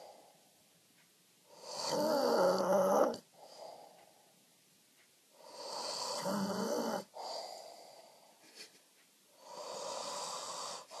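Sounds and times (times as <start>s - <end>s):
man snoring: 1.5s - 3.2s, 5.4s - 7.6s, 9.4s - 11.0s.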